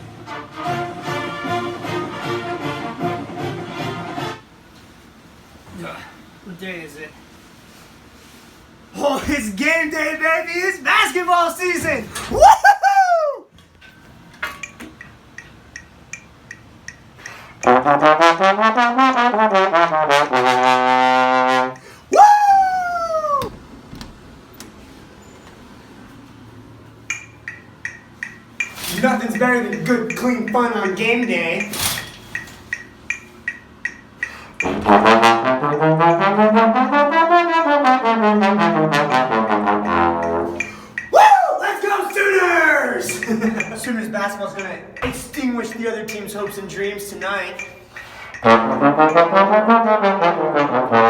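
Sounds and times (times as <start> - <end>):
low brass instrument playing: 0.3 - 4.4, 17.7 - 21.8, 34.7 - 40.6, 48.4 - 51.0
faint regular clicks: 14.6 - 17.4, 27.1 - 28.9, 31.6 - 34.4.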